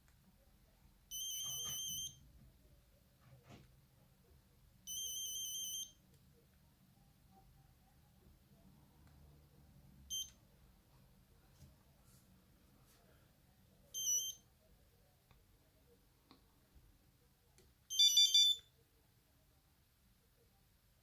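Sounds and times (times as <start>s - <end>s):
phone buzzer electronic tones: 1.1s - 2.2s, 4.9s - 6.0s, 14.0s - 14.4s, 17.9s - 18.6s.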